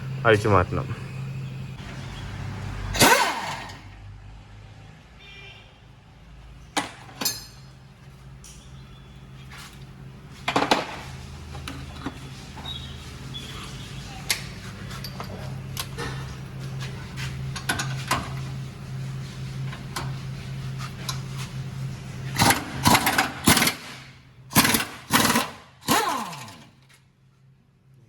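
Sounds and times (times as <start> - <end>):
pneumatic impact wrench bursts: 2.9 - 4.0, 22.3 - 26.8.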